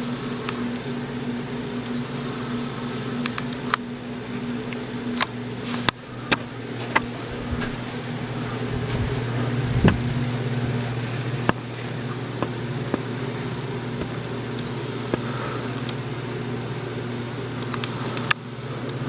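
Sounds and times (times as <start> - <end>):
ceiling fan motor hum: 0.0 - 19.0.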